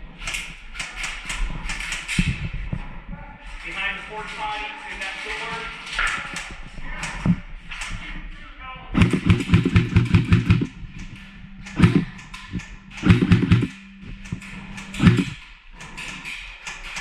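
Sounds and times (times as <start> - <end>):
airsoft gun firing: 9.0 - 10.7, 13.0 - 13.8.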